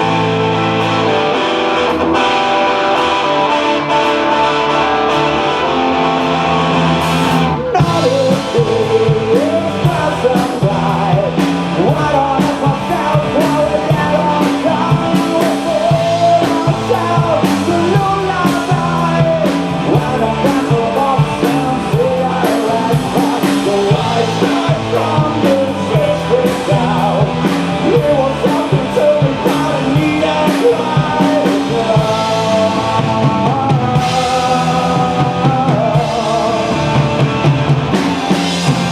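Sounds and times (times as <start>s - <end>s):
rock band playing live: 0.0s - 38.9s.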